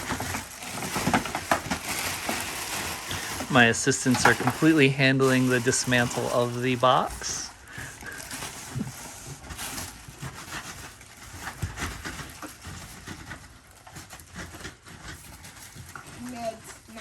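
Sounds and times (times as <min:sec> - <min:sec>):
cardboard rustling and scraping: 0:00.0 - 0:17.0.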